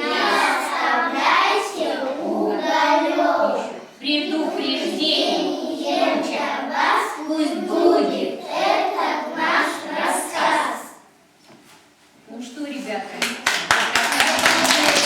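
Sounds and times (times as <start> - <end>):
children singing in chorus: 0.0 - 10.9.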